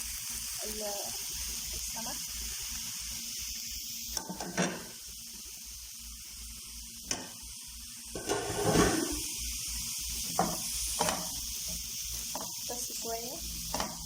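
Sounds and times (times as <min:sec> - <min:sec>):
fish sizzling in a frying pan: 0:00.0 - 0:14.0
knocks in a pan: 0:04.2 - 0:04.9, 0:10.3 - 0:11.3, 0:13.7 - 0:14.0
stirring in a pan: 0:08.1 - 0:14.0.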